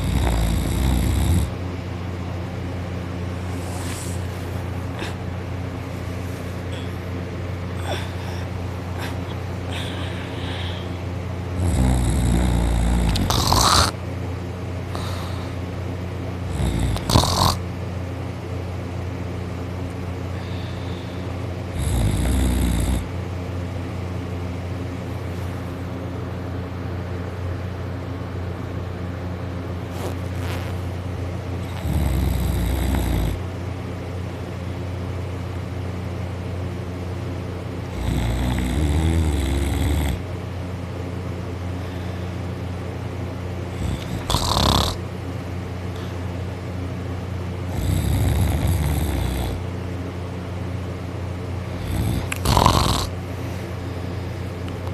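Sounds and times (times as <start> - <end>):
person snoring loudly: 0.0 - 1.6, 5.0 - 5.2, 7.7 - 8.4, 11.6 - 14.0, 16.4 - 17.6, 20.4 - 23.1, 31.6 - 33.4, 37.9 - 40.2, 43.7 - 45.0, 47.7 - 49.6, 51.8 - 53.2
steady low hum: 0.0 - 54.9.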